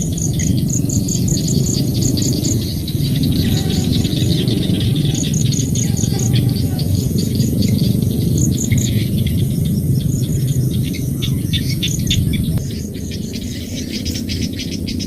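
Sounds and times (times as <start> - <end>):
bird calls: 0.0 - 15.0
crickets chirping: 0.0 - 15.0
low rumble: 0.0 - 15.0.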